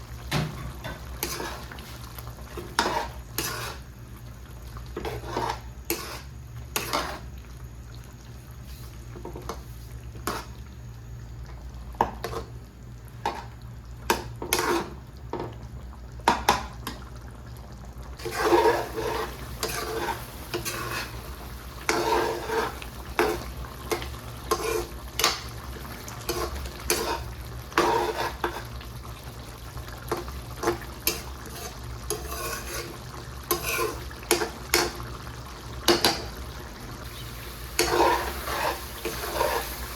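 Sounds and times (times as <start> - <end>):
utensil scraping metal pan: 18.2 - 21.2, 31.1 - 32.9.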